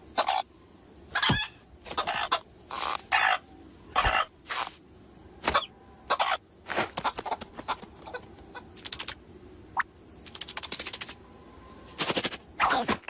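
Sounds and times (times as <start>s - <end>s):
cartoon squawks and clucks: 1.1s - 3.4s, 4.0s - 4.3s, 12.6s - 13.0s
fast run of clicks: 6.9s - 9.2s, 10.2s - 11.2s.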